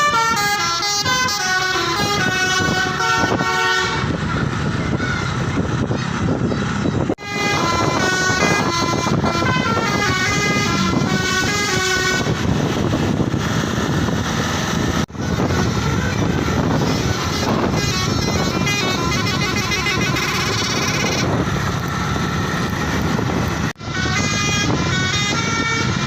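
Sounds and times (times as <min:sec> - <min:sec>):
multi-tone musical air horn: 0:00.0 - 0:04.2, 0:07.2 - 0:12.7, 0:15.2 - 0:21.3, 0:23.8 - 0:26.0
bus engine: 0:00.0 - 0:26.0
street noise: 0:00.0 - 0:26.0.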